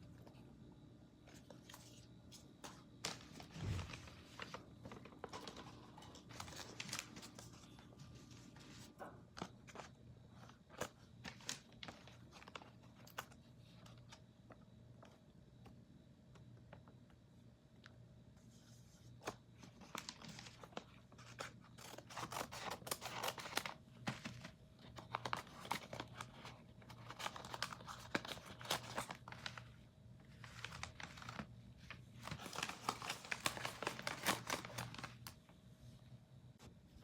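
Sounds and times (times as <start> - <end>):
plastic wrapper tearing and crinkling: 19.8 - 23.8, 25.0 - 29.6, 32.2 - 35.4.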